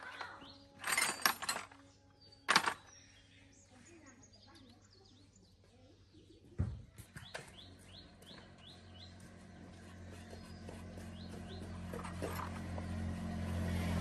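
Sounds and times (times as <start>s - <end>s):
small birds chirping: 0.0s - 13.1s
low engine hum: 7.0s - 14.0s.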